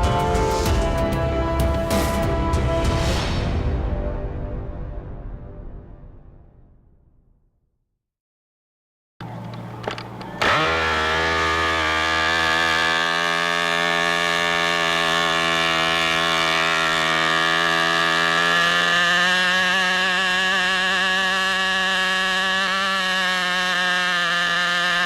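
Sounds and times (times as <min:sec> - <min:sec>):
clicks: 0:09.2 - 0:10.6
model airplane engine running: 0:09.2 - 0:25.0.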